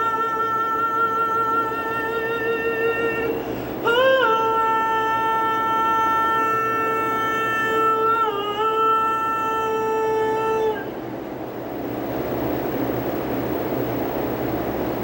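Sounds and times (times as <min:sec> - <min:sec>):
steady noisy hum: 0:00.0 - 0:15.0.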